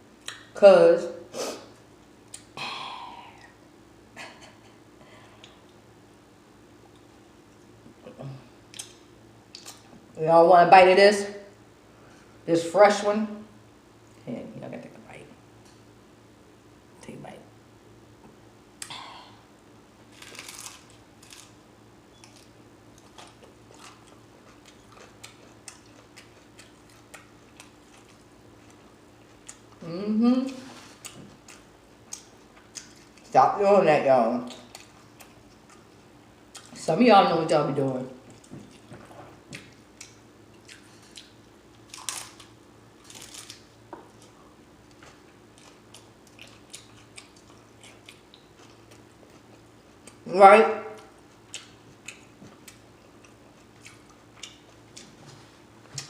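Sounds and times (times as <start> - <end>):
chewing food close up: 20.2 - 29.8, 38.2 - 50.2, 51.0 - 55.2.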